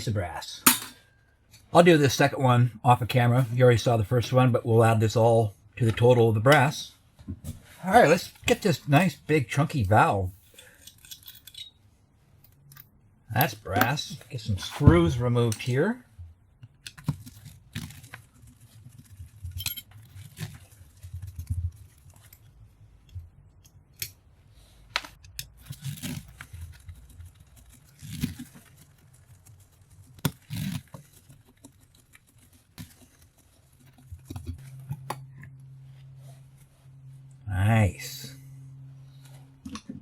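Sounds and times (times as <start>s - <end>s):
metal tools clicking and scraping: 0.6s - 1.6s, 10.3s - 14.0s, 16.8s - 22.5s
steady low hum: 32.8s - 40.0s.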